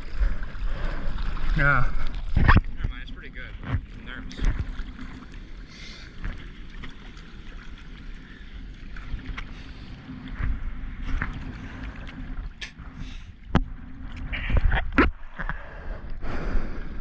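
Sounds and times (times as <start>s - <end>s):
small water splashes: 0.0s - 15.4s
water sloshing and lapping: 0.0s - 17.0s
wind rumble on microphone: 8.9s - 17.0s.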